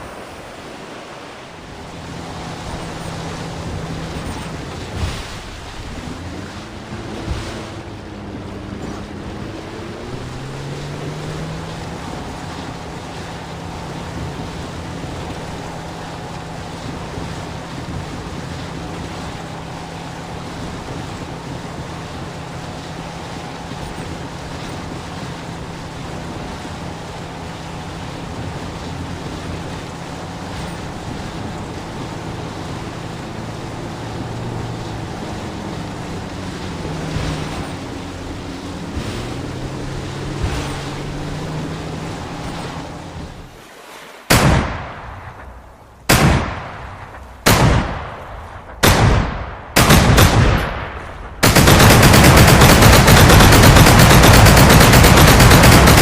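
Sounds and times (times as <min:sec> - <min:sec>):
boat motor running: 0:00.0 - 0:56.0
water: 0:00.0 - 0:56.0
machine-gun sound effect: 0:51.4 - 0:56.0.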